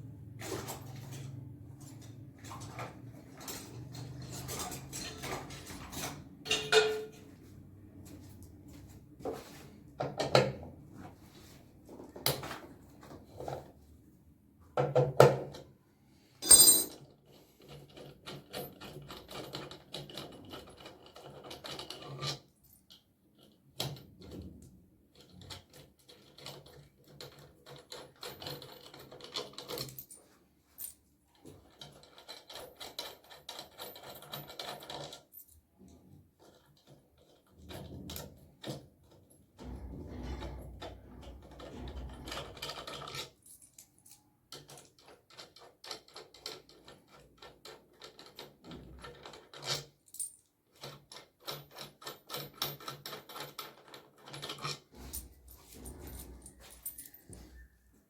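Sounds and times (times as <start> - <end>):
hand tools clicking and rattling: 16.4 - 17.0
sharp metallic clink: 16.4 - 17.0.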